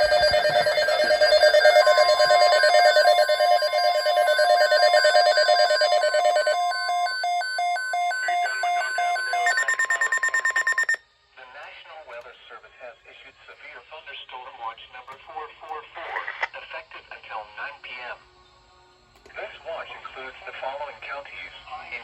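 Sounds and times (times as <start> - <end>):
steady single tone: 0.0 - 10.9
pulsing electronic alarm tones: 0.0 - 11.0.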